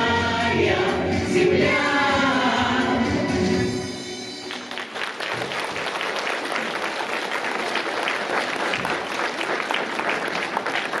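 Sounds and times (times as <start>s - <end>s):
audience applauding: 4.4s - 11.0s.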